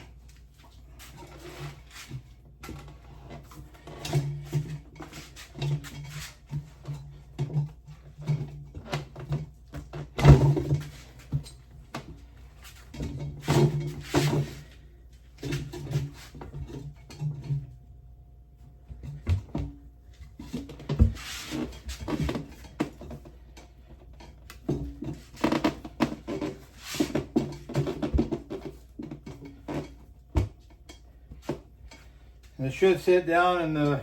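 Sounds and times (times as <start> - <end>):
rubber tire knocking and rubbing: 18.9 - 32.1.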